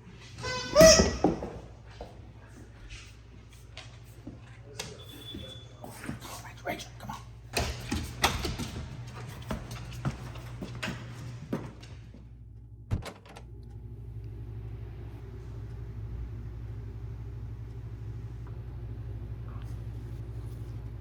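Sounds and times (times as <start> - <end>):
steady low hum: 1.6 - 21.0.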